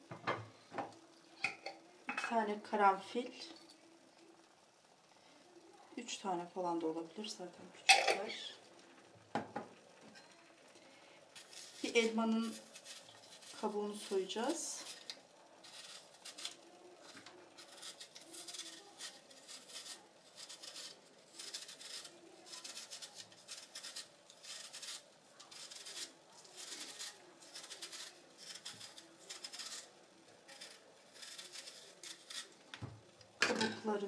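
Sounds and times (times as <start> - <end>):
blade scraping apple skin: 11.4 - 29.9, 30.5 - 32.6.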